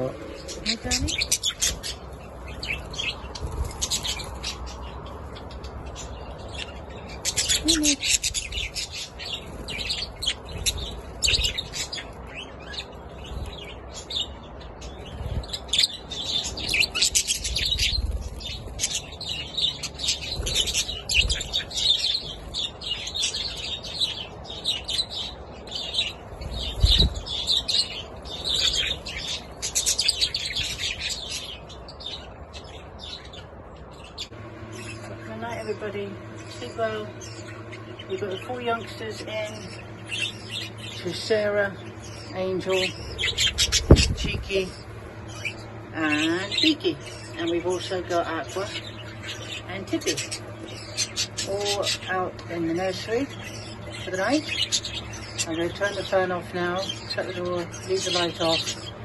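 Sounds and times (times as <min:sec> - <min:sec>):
budgerigars chirping and chattering: 0:00.0 - 0:59.0
low thumps: 0:43.7 - 0:44.6.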